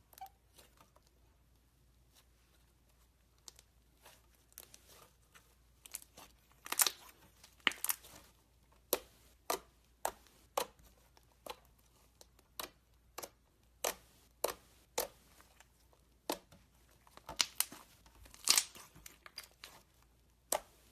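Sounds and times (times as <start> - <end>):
slime squishing with sticky clicks: 0.0 - 1.2, 3.2 - 20.9
slime crackling: 5.8 - 10.8, 11.4 - 20.9.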